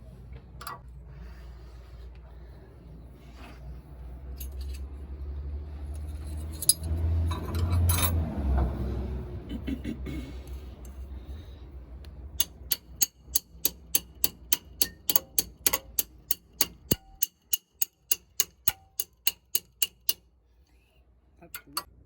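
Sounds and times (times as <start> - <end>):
sharp metallic clicks: 12.4 - 20.2.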